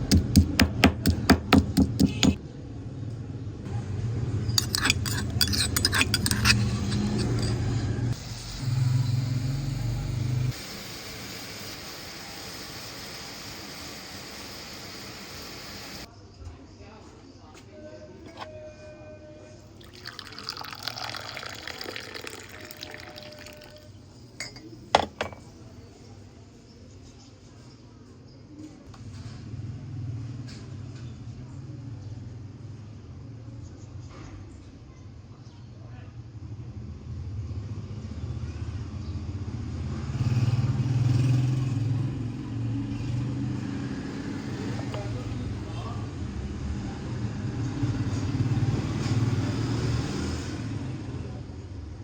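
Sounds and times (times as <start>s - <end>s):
knife chopping on cutting board: 0.0s - 2.4s
liquid pouring: 19.7s - 24.6s
light clinks of kitchenware: 24.4s - 25.6s.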